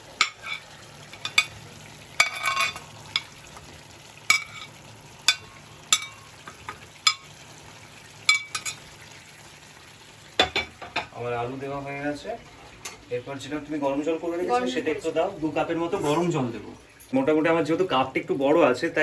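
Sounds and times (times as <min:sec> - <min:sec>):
spatula scraping in a pan: 0:00.0 - 0:03.4, 0:04.3 - 0:07.3
food sizzling: 0:00.0 - 0:19.0.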